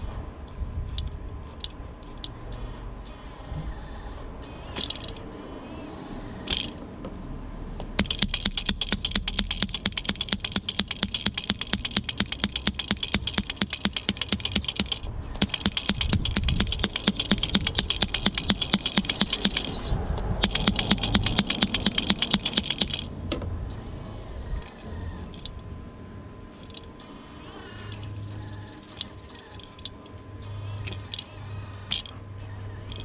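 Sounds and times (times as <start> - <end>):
mechanical whir: 0.0 - 33.0
toy hammer rapid clicking: 8.0 - 23.1, 30.5 - 33.0.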